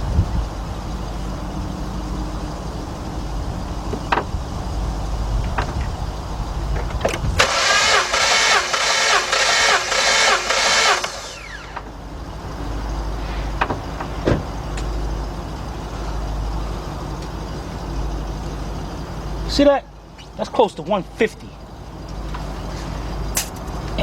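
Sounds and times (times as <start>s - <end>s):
starter motor cranking engine: 7.2s - 12.0s.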